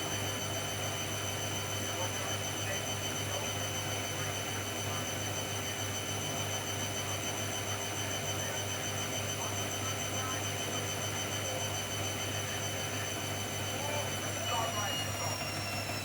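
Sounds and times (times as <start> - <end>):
washing machine spinning: 11.2 - 16.0.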